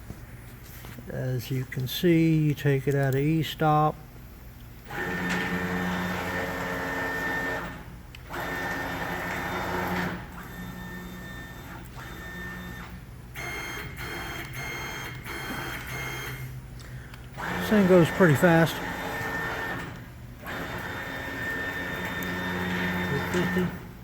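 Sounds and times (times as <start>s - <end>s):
stepper motors whining: 17.3s - 23.9s.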